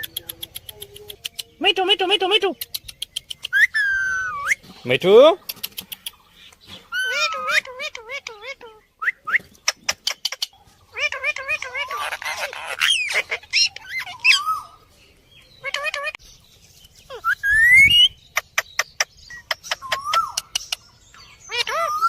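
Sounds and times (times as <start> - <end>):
parrot clicking calls: 0.0 - 1.6, 2.4 - 4.0, 5.4 - 6.2, 7.0 - 8.8, 9.7 - 14.4, 18.4 - 20.9
parrot whistling and squawking: 3.4 - 4.6, 6.9 - 9.5, 10.3 - 14.8, 17.1 - 20.6, 21.5 - 22.0.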